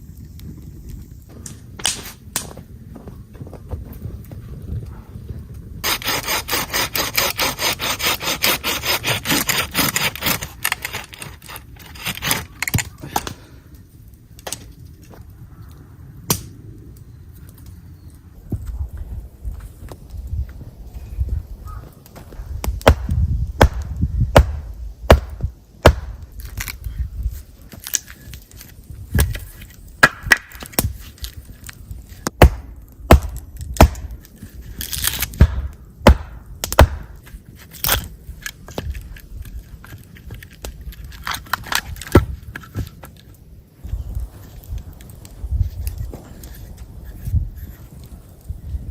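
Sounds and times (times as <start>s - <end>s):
blade chopping into wood: 5.8s - 13.3s, 22.7s - 26.8s, 32.2s - 34.2s, 34.8s - 37.2s, 41.4s - 42.8s.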